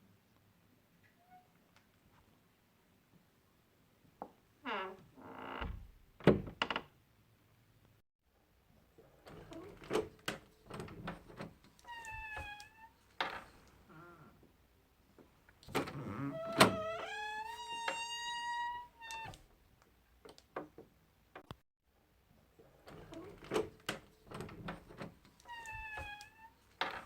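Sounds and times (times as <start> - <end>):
door hinges creaking: 4.7 - 6.9, 9.3 - 14.4, 15.6 - 19.5, 22.9 - 27.0.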